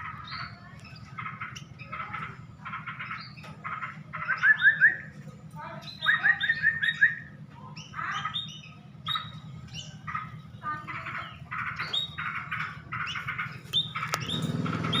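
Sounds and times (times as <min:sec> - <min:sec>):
bird chirping and chattering: 0:00.0 - 0:15.0.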